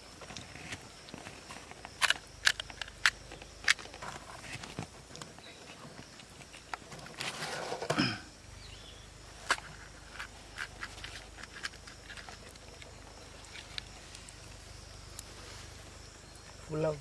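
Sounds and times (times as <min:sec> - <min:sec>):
crisp shells crunching: 0:09.5 - 0:14.5.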